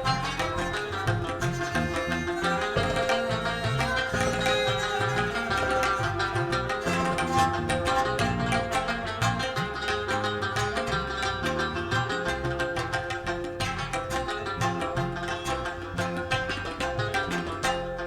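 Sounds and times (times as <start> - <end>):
held drone note: 0.0 - 12.2
plucked rubab melody: 0.0 - 18.0
tabla strokes: 0.0 - 18.0.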